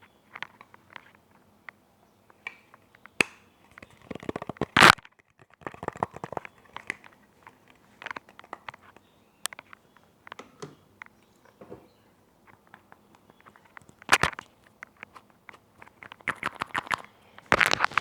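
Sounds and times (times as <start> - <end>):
crackling against microphone: 0.0 - 18.0.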